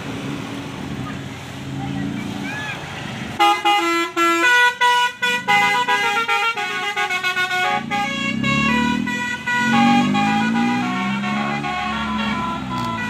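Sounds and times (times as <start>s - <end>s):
bus horn playing a tune: 3.4s - 13.0s.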